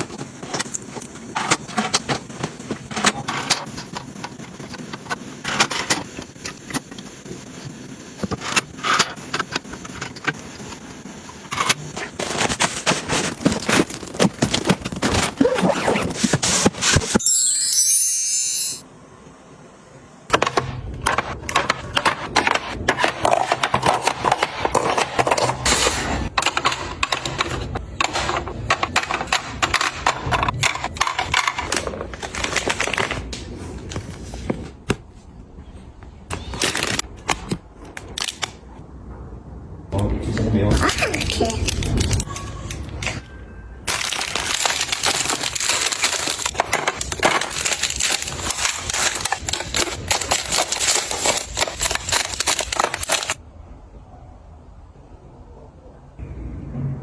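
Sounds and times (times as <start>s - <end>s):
packaging being crumpled: 11.6s - 17.2s, 30.7s - 34.0s, 43.9s - 53.4s
small items clicking and tapping: 43.9s - 53.4s.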